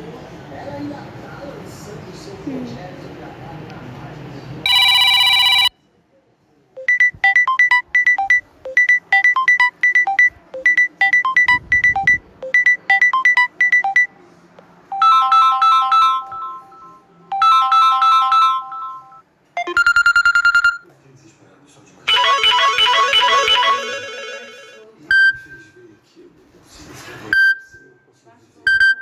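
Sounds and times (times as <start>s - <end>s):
phone ringtone melody: 4.7s - 5.7s, 6.8s - 14.1s, 14.9s - 20.8s, 22.1s - 25.4s.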